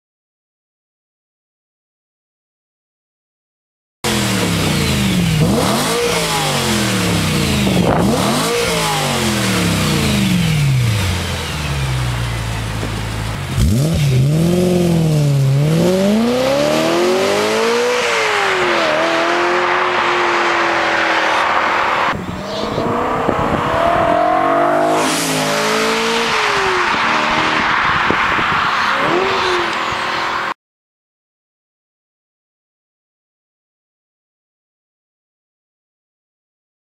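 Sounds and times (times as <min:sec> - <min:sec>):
car engine revving: 0:04.0 - 0:30.5.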